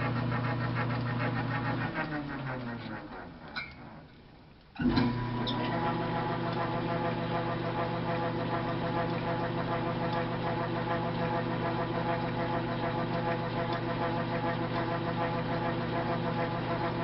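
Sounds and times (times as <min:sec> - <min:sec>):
lathe running with whine: 0:04.8 - 0:17.0.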